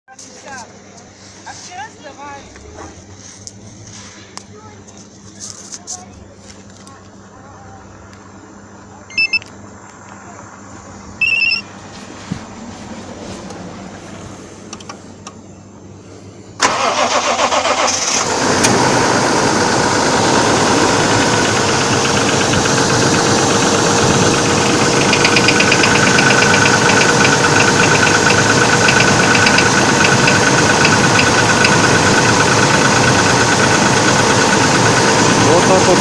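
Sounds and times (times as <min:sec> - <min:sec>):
engine starter cranking: 0:16.6 - 0:36.0
engine idling with rhythmic knock: 0:20.0 - 0:36.0.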